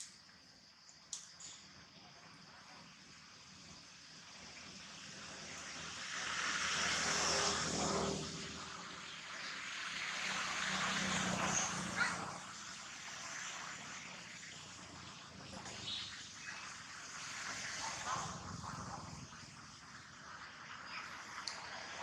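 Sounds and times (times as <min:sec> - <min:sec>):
vehicles passing by: 0:05.3 - 0:16.0.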